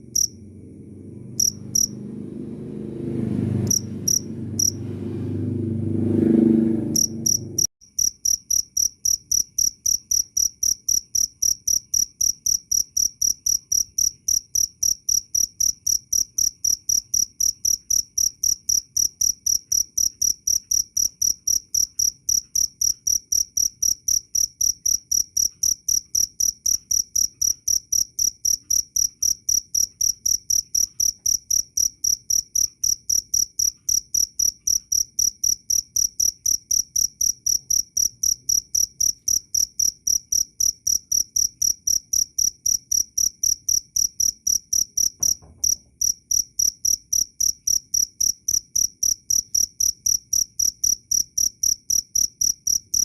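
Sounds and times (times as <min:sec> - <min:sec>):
cricket chirping: 0:00.0 - 0:02.1, 0:03.4 - 0:04.8, 0:06.8 - 0:53.0
faint low knock: 0:45.2 - 0:46.0.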